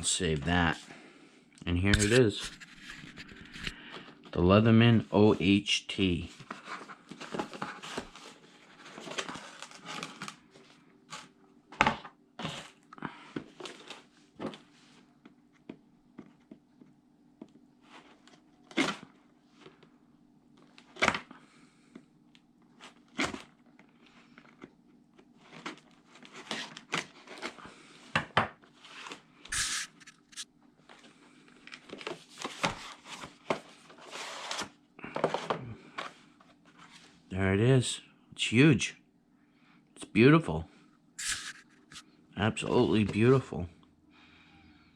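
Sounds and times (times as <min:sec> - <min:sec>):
packaging rustling and tearing: 0:06.4 - 0:10.5, 0:25.4 - 0:27.6, 0:28.9 - 0:30.5, 0:31.6 - 0:35.4, 0:41.2 - 0:42.0.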